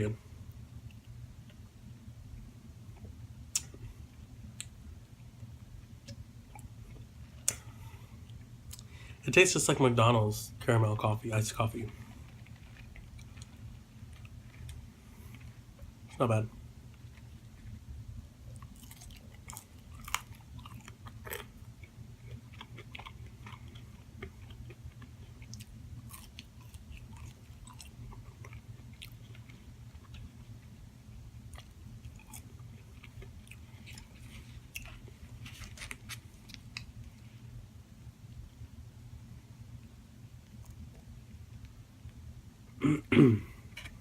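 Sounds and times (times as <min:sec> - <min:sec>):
chewing and biting food: 0:11.8 - 0:16.0, 0:18.4 - 0:30.7, 0:31.4 - 0:37.0.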